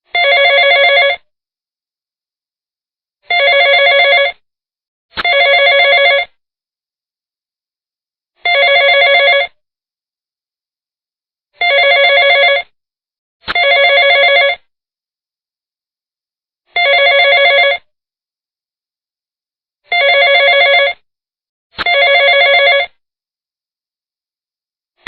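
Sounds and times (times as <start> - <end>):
telephone ringing: 0.1 - 1.2, 3.3 - 4.4, 5.2 - 6.3, 8.4 - 9.6, 11.6 - 12.8, 13.5 - 14.6, 16.8 - 17.9, 19.9 - 21.0, 21.8 - 23.0.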